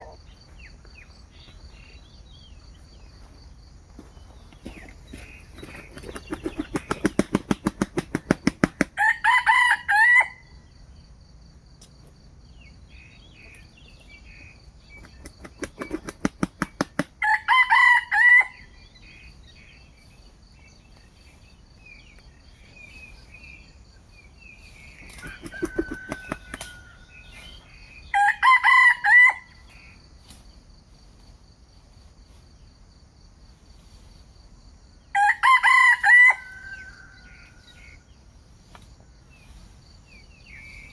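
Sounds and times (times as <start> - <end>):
rooster wings clapping: 5.5 - 9.0, 15.0 - 17.2, 25.0 - 26.8
rooster crowing: 8.9 - 10.6, 17.2 - 18.8, 25.2 - 29.6, 35.1 - 38.0.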